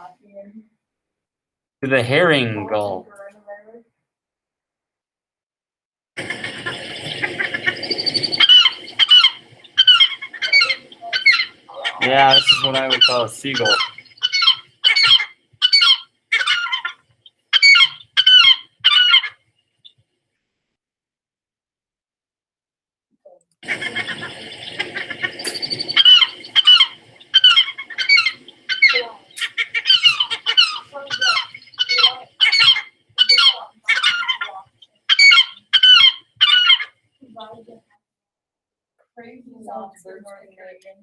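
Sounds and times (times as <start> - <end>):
gull calling: 6.2 - 17.0, 17.6 - 19.4, 23.6 - 37.4.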